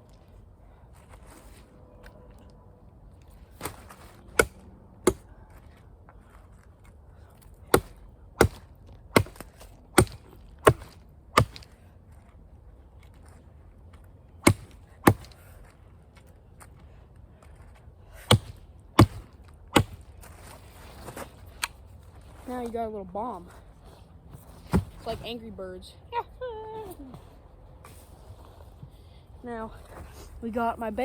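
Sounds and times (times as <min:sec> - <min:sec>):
wood chopping strikes: 0:03.6 - 0:05.3, 0:07.7 - 0:11.8, 0:14.4 - 0:15.4, 0:18.2 - 0:20.1.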